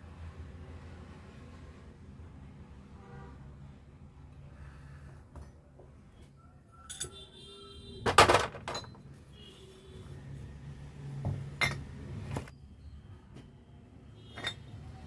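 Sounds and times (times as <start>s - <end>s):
metal tools clinking: 6.8s - 7.2s, 8.3s - 9.1s, 14.3s - 14.7s.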